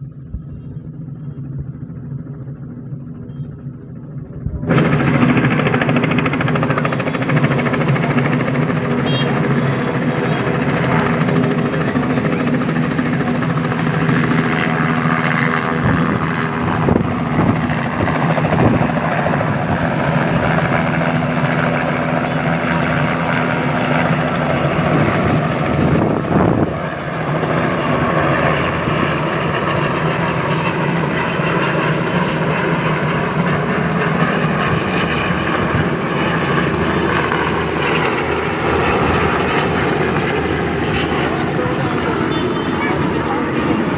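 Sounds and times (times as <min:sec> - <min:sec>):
helicopter engine and rotor: 0:00.0 - 0:43.9.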